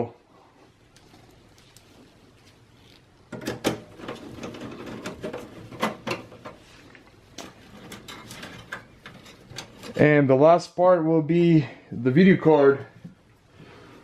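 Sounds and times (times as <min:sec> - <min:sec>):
metal clicks and scraping: 0:03.3 - 0:10.1.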